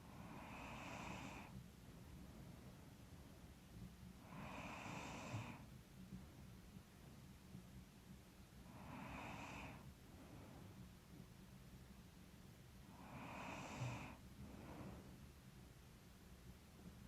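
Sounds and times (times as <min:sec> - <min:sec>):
woman breathing while asleep: 0:00.0 - 0:01.6, 0:04.2 - 0:05.7, 0:08.6 - 0:10.9, 0:12.9 - 0:15.3.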